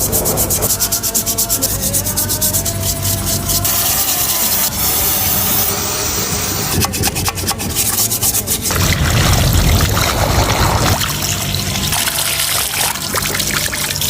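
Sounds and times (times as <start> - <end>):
rubbing and scraping on metal parts: 0.0 - 11.0
loud rushing noise: 8.4 - 11.4.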